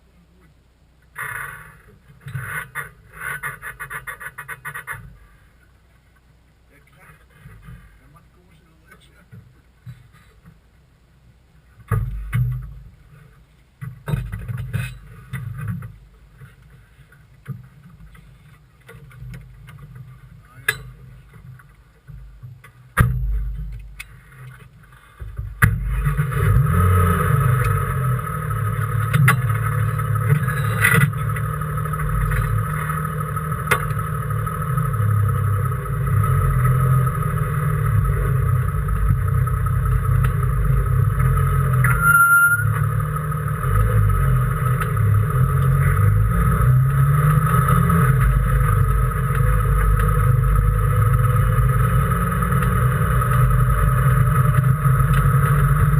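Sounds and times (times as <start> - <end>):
race car engine from cockpit: 25.4 - 55.9.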